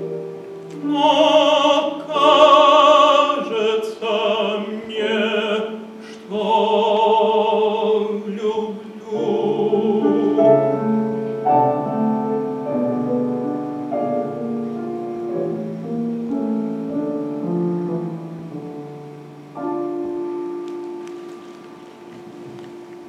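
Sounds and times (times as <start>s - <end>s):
piano chords and melody: 0.0s - 23.0s
man singing with vibrato: 0.8s - 11.1s.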